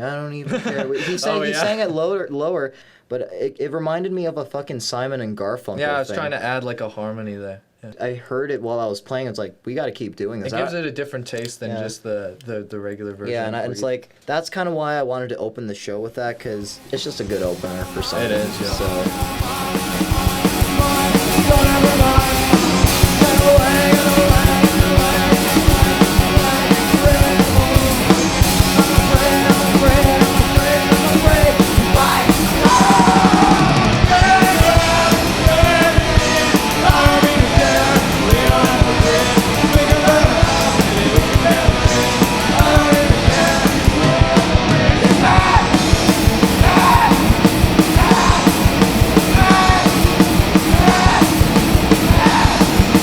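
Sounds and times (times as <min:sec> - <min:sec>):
distorted guitars: 0:16.5 - 0:53.0
yelled vocals: 0:16.5 - 0:53.0
fast driving drums: 0:16.6 - 0:53.0.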